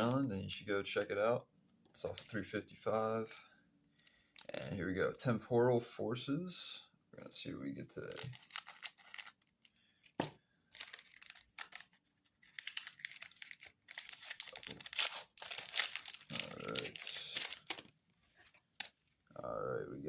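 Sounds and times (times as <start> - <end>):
foil wrapper tearing and crinkling: 8.1 - 9.6, 10.7 - 17.9.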